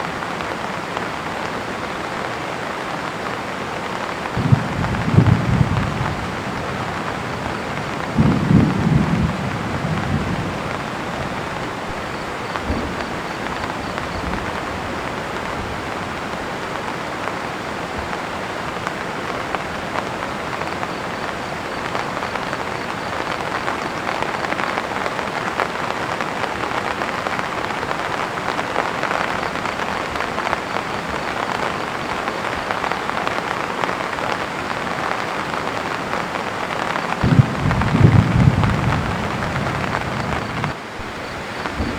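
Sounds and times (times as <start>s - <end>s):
heavy rain: 0.0s - 41.9s
thunder rumble: 4.4s - 16.0s, 37.2s - 41.9s.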